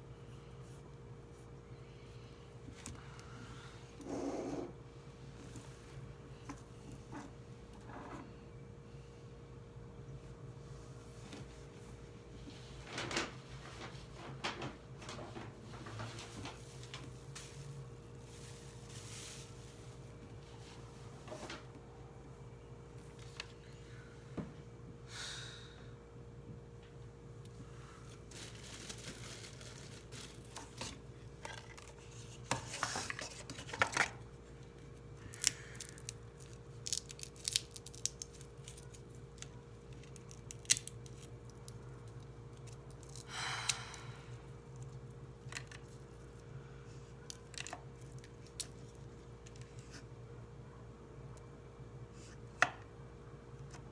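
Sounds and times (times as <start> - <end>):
low background hum: 0.0 - 53.9
paper rustling: 12.4 - 20.0, 28.3 - 31.0.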